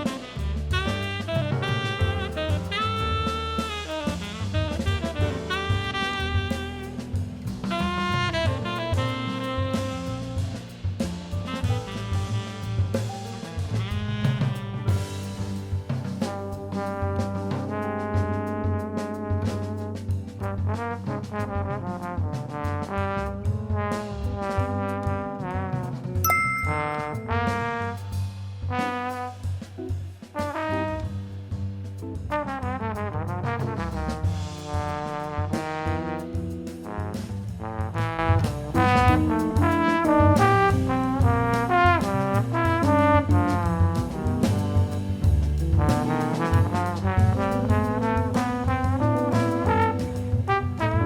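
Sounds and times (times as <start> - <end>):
bass line and beat: 0.0 - 15.3
horn melody over bass and drums: 0.0 - 51.0.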